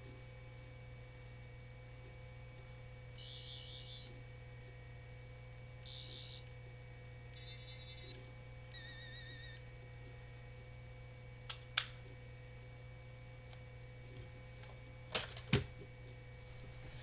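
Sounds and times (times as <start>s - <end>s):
toy high-pitched warbling buzzes: 3.2s - 4.2s, 5.8s - 6.5s, 7.3s - 9.6s.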